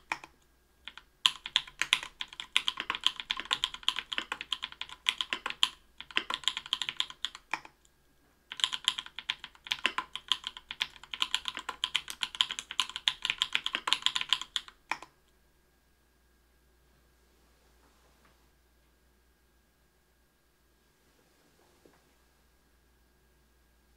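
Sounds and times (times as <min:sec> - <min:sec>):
typing on mechanical keyboard: 0:00.0 - 0:07.8, 0:08.5 - 0:15.1.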